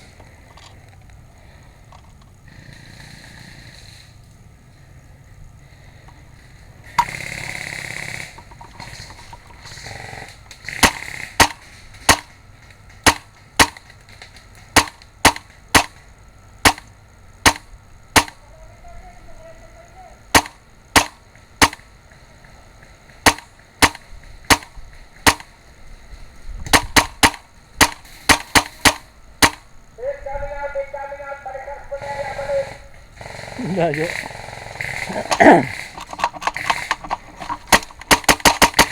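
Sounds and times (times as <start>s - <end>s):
airsoft gun shots: 10.7s - 12.4s, 13.0s - 14.0s, 14.7s - 16.0s, 16.6s - 18.4s, 20.3s - 21.9s, 23.2s - 25.6s, 26.6s - 29.7s, 33.3s - 38.9s.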